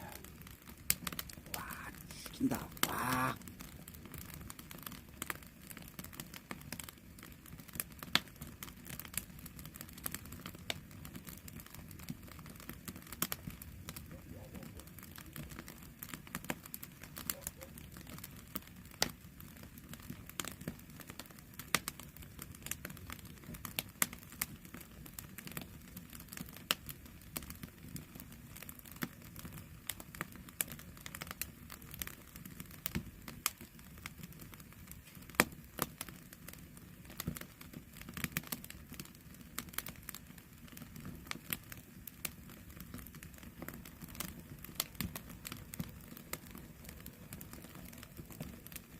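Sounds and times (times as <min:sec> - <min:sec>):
flames rumbling: 0:00.0 - 0:14.0, 0:27.3 - 0:48.9
firewood crackling and popping: 0:00.0 - 0:48.9.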